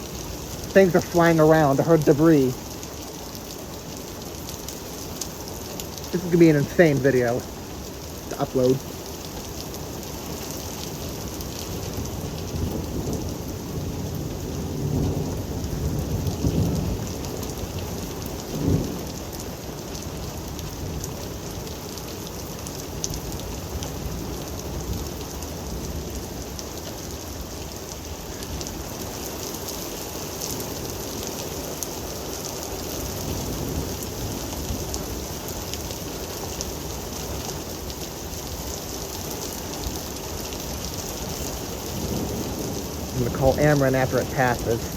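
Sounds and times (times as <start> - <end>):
heavy rain falling: 0.0 - 44.9
thunder rumbling: 41.9 - 44.9.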